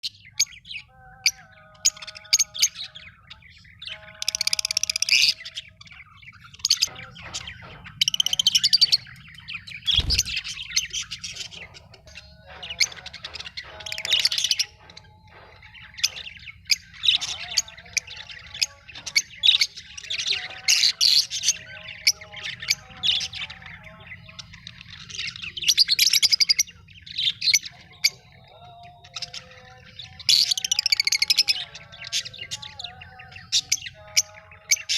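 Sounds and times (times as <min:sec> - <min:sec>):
lovebirds chirping and squawking: 0:00.0 - 0:34.9.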